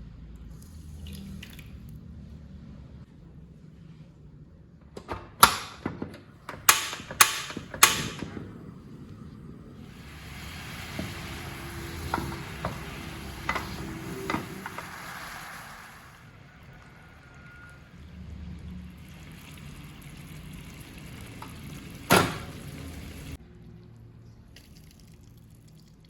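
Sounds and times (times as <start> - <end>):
food sizzling: 9.8 - 17.9.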